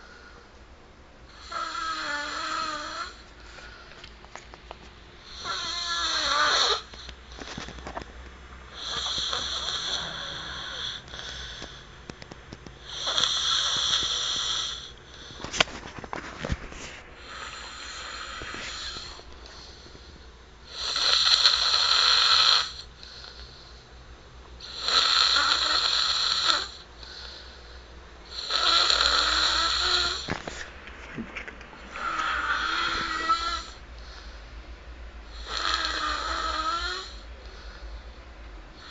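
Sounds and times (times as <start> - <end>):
quiet breathing: 0.0 - 8.0, 8.7 - 12.2, 12.8 - 15.6, 16.7 - 21.1, 22.6 - 25.0, 26.4 - 30.8, 31.8 - 38.9
person snoring loudly: 1.4 - 3.2, 5.3 - 6.9, 8.8 - 11.8, 12.8 - 14.9, 17.2 - 19.2, 20.7 - 23.4, 24.6 - 27.4, 28.3 - 30.3, 31.9 - 33.8, 35.3 - 37.2.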